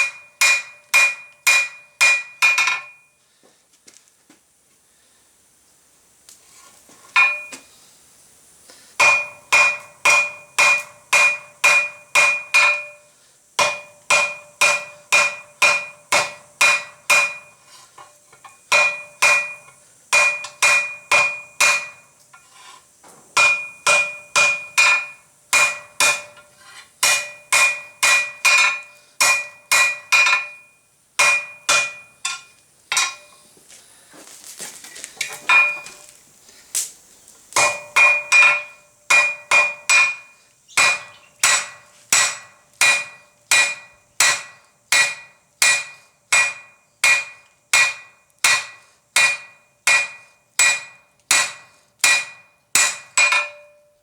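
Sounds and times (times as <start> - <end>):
hammer striking metal on anvil: 0.0 - 3.1, 7.2 - 7.6, 9.0 - 13.0, 13.6 - 17.6, 18.4 - 22.5, 23.4 - 33.4, 35.4 - 36.0, 37.6 - 53.9.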